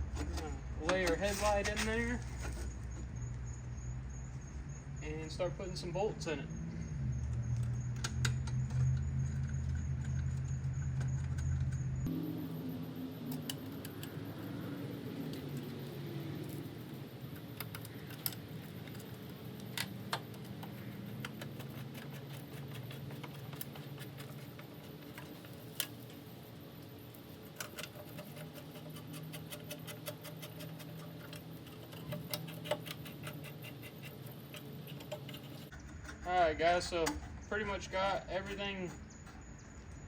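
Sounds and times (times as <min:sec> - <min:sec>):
hand tool ratchet ticking: 0:27.6 - 0:36.2.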